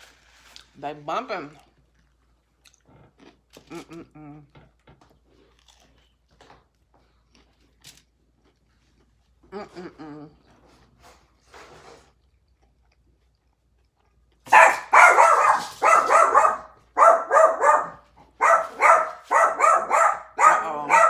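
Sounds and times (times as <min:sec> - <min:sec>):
puppy barking: 0:14.5 - 0:21.0.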